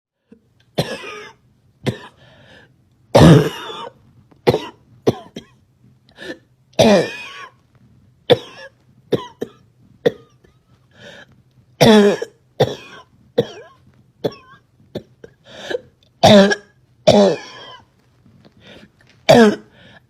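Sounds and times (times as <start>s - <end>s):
girl's barking cough: 0.8s - 2.2s, 3.2s - 3.9s, 6.8s - 7.5s.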